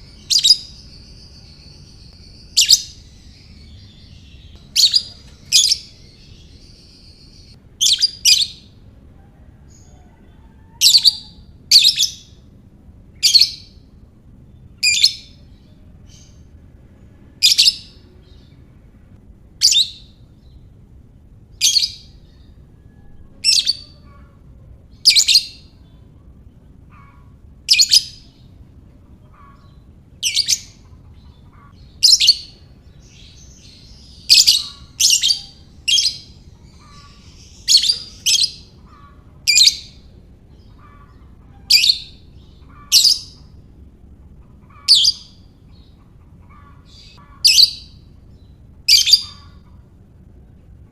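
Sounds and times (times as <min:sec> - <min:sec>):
bird chirping sharply: 0:00.0 - 0:08.8.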